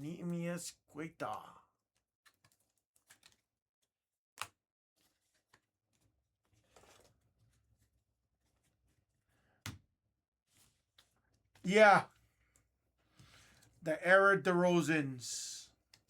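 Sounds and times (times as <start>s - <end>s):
handling of trading cards: 2.0s - 3.6s, 4.4s - 7.7s.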